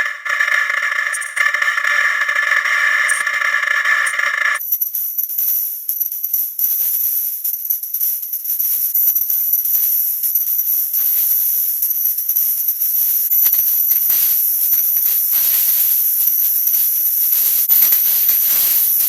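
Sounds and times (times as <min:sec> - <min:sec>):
faint crackle: 0:00.0 - 0:19.0
high shimmering hiss: 0:13.9 - 0:19.0.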